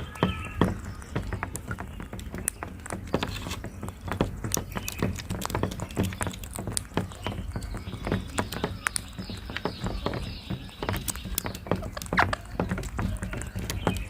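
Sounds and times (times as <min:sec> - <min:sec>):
parakeet calls: 0:00.0 - 0:02.1
sharp clicks and knocks: 0:00.0 - 0:14.0.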